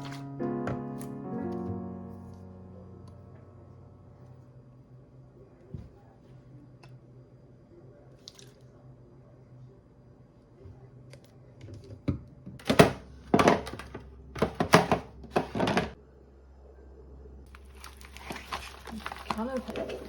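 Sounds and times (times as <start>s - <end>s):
objects clattering and rattling: 11.7s - 16.0s, 17.5s - 20.0s.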